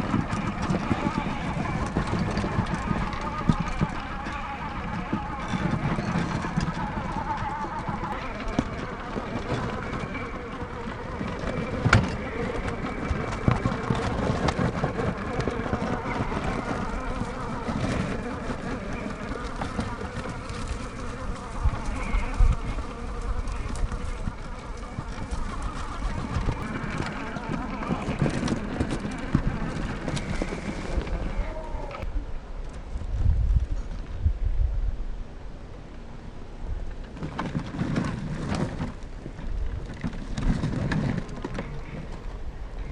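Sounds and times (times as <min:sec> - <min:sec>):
toy car electric motor whining: 0:00.0 - 0:32.1.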